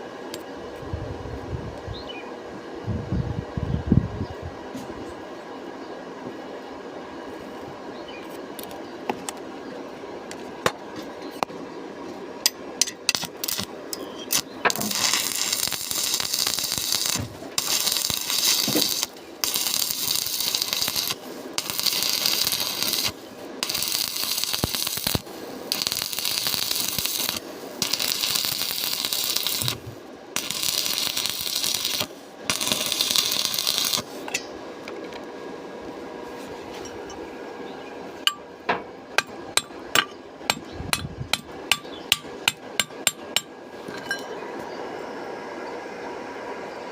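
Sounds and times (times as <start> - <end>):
low background hum: 0.0 - 46.9
welding arc crackling: 12.8 - 34.2.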